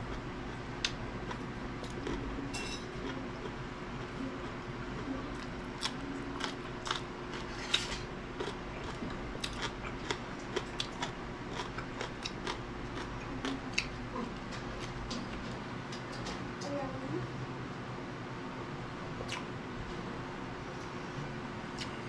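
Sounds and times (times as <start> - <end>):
faint steady hum: 0.0 - 22.0
crisp chewing crunches: 5.0 - 15.4.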